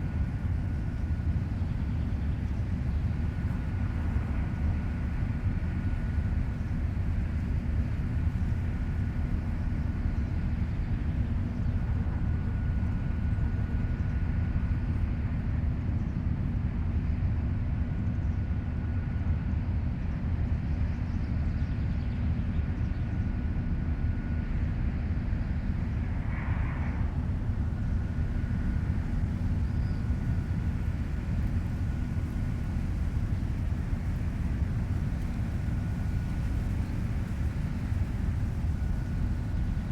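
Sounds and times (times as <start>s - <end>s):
faint high whine: 25.2s - 39.8s.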